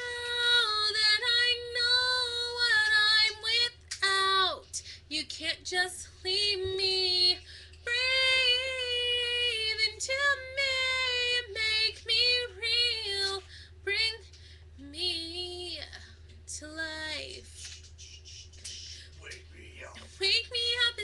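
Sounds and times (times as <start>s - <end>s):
singer breathing: 7.4s - 7.8s.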